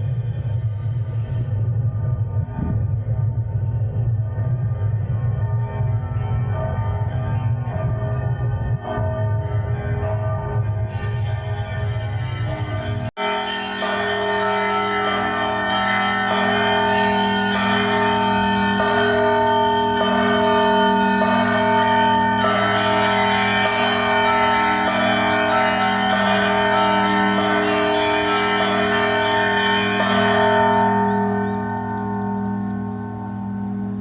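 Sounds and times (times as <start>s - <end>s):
church bells ringing: 13.2s - 34.0s.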